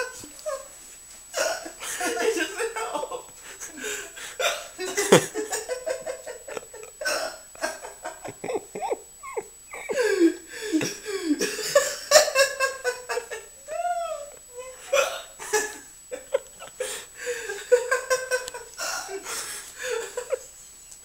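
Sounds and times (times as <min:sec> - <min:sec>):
giggling: 0:00.0 - 0:00.8, 0:01.4 - 0:20.5
man hiccupping: 0:06.5 - 0:11.9.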